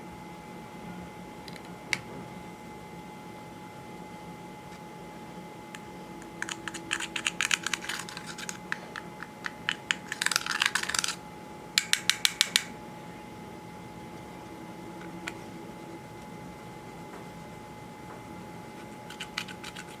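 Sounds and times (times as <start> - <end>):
sharp clicks and taps: 11.8 - 12.7.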